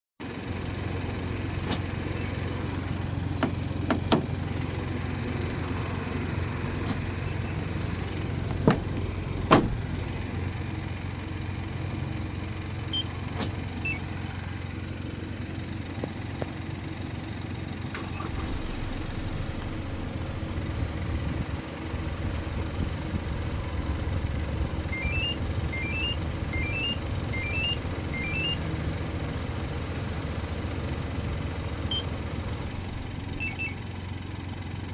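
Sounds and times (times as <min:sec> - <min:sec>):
diesel truck engine idling: 0:00.2 - 0:34.9
sharp clicks and knocks: 0:03.4 - 0:04.4
short rising electronic beeps: 0:24.9 - 0:28.6.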